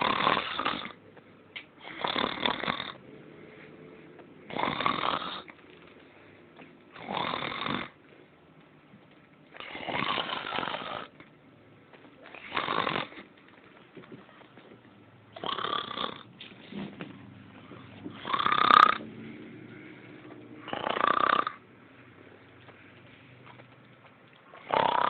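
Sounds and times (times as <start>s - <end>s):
person snoring: 0.0s - 1.0s, 1.8s - 3.0s, 4.5s - 5.5s, 7.0s - 8.0s, 9.6s - 11.2s, 12.3s - 13.2s, 15.4s - 16.3s, 18.1s - 21.6s, 24.6s - 25.0s
quiet breathing: 0.0s - 7.1s, 17.2s - 25.0s.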